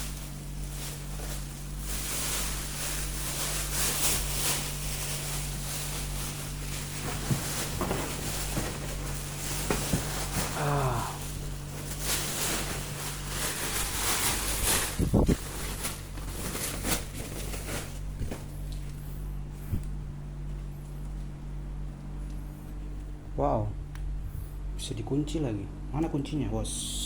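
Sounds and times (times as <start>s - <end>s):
rustling: 0.0s - 21.4s
steady low hum: 0.0s - 27.0s.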